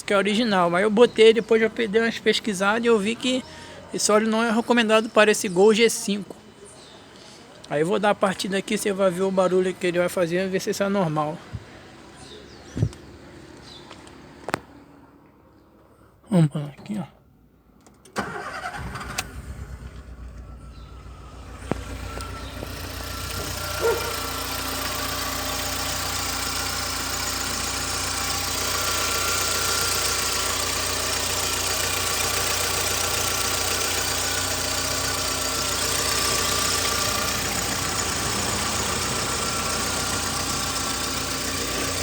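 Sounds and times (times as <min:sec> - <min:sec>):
car engine idling: 0:18.2 - 0:42.0.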